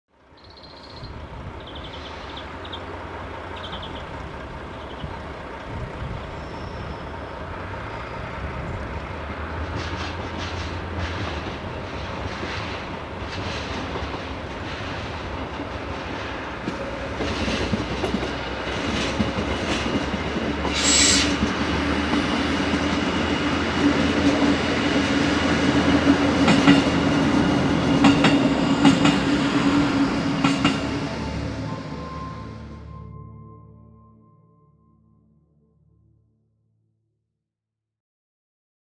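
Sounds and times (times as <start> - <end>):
diesel train drone: 0.1 - 36.1
wheels clattering over track: 9.4 - 31.0
high-pitched squeal: 20.6 - 21.8.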